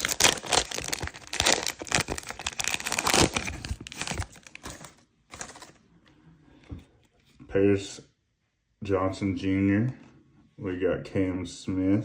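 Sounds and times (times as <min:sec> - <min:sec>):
wrapper tearing open: 0:00.0 - 0:04.7
plastic wrapper crinkling: 0:00.0 - 0:05.8.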